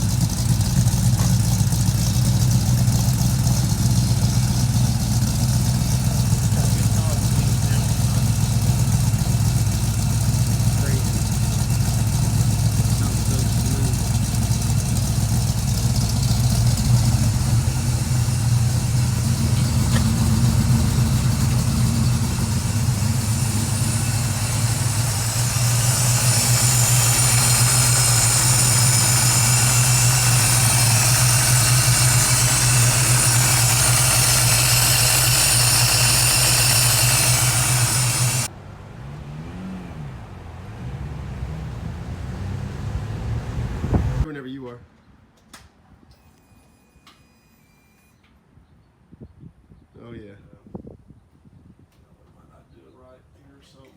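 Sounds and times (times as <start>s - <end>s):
car engine idling: 0.0s - 39.0s
low tone rising and falling: 13.0s - 40.1s.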